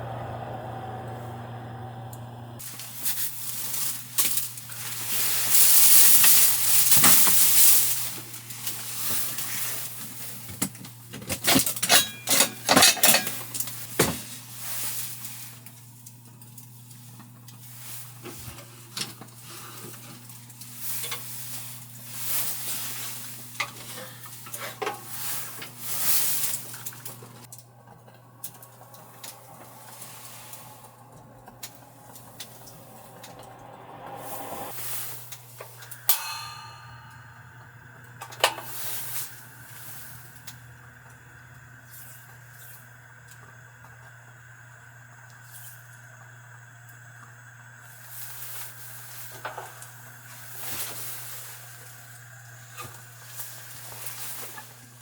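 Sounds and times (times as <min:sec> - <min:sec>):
steady low hum: 0:00.0 - 0:02.7, 0:27.5 - 0:49.2
utensils clinking against pan: 0:11.2 - 0:13.7.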